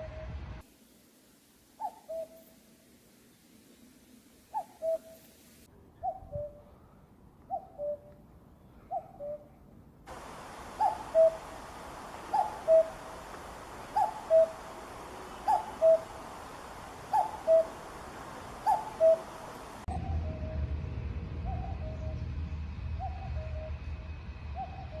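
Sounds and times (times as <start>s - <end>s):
cuckoo calling: 1.8s - 2.6s, 4.5s - 5.3s, 7.5s - 8.2s, 10.1s - 20.5s
low rumble: 19.9s - 24.8s.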